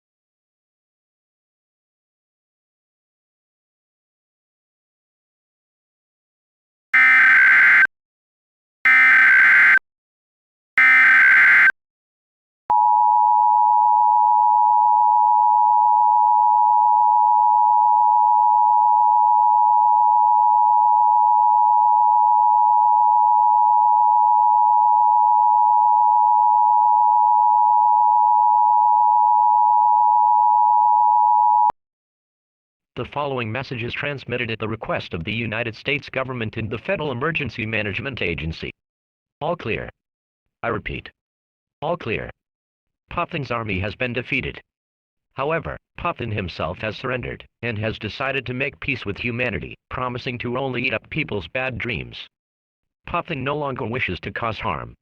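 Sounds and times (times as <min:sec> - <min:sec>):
two-tone attention signal: 0:07.0 - 0:07.9, 0:08.9 - 0:09.8, 0:10.8 - 0:11.7
warbling data bursts: 0:07.0 - 0:07.9, 0:08.9 - 0:09.8, 0:10.8 - 0:11.7.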